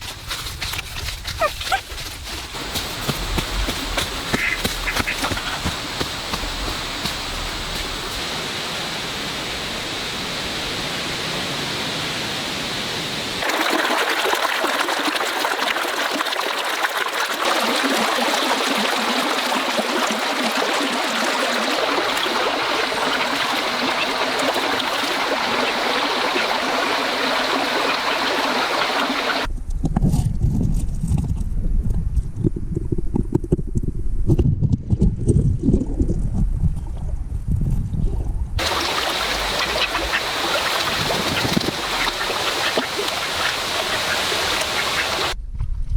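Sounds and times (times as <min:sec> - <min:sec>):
splashy water crackle: 0:00.0 - 0:08.9, 0:13.4 - 0:29.5, 0:38.6 - 0:45.4
running water rushing: 0:01.4 - 0:29.5, 0:38.6 - 0:45.4.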